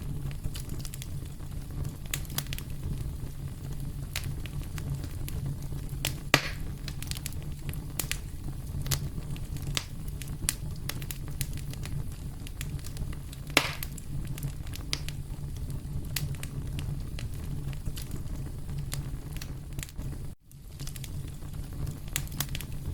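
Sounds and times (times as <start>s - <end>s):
campfire crackling: 0.0s - 22.9s.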